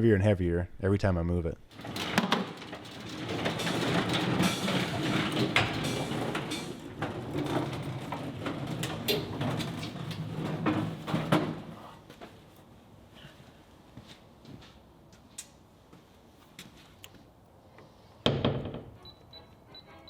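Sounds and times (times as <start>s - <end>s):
heavy steel door clunking: 1.7s - 11.8s.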